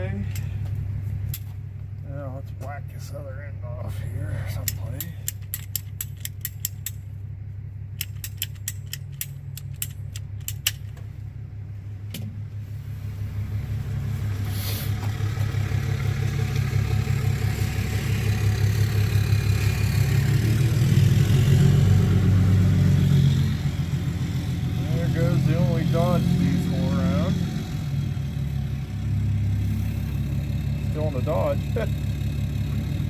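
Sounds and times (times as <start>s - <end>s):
sharp clicks: 8.0s - 11.0s
diesel pickup engine passing: 12.8s - 33.0s.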